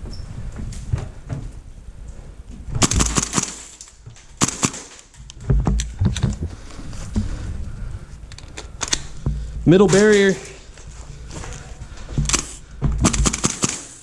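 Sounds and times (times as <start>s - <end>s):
heavy thumps: 2.6s - 8.3s, 9.0s - 13.8s
airsoft rifle shots: 2.8s - 3.8s, 4.4s - 5.1s, 12.3s - 14.0s.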